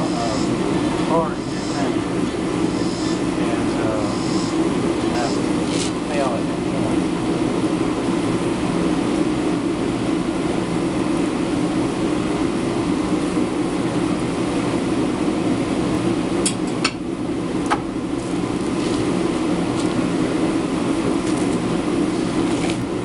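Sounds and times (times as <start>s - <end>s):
forge burner roaring: 0.0s - 23.0s.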